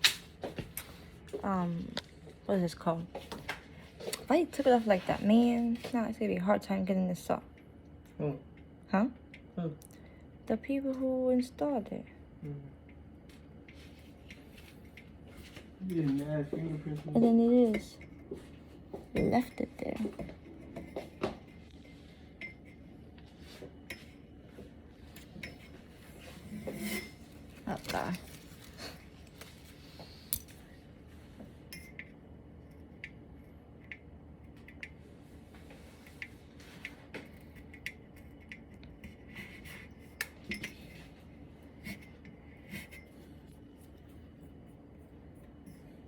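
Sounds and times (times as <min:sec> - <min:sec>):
glassware and dishes clinking: 0:19.0 - 0:21.3.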